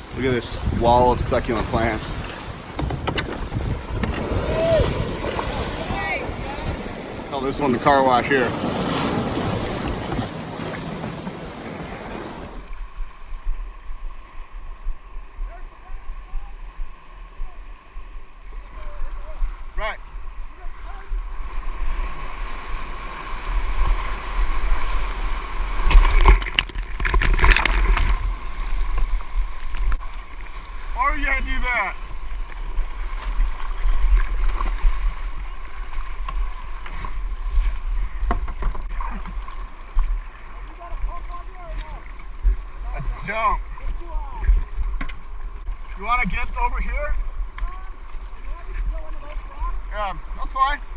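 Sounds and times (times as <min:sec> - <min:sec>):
sea water rushing over rocks: 0:00.0 - 0:12.9, 0:20.6 - 0:50.9
wind on microphone: 0:00.0 - 0:30.0.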